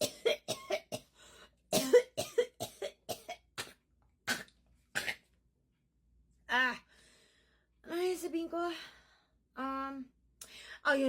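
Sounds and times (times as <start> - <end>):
person coughing: 0.0 - 5.3.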